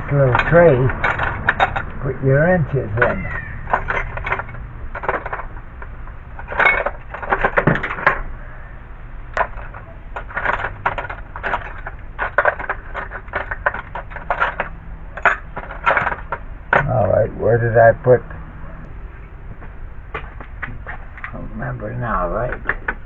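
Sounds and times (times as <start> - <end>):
metal wrenches clinking: 0.0 - 8.3, 9.3 - 17.1.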